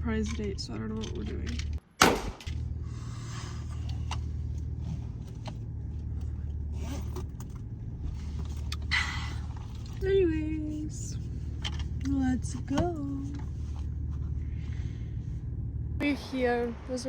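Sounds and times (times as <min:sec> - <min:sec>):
car engine hum: 0:00.0 - 0:17.0.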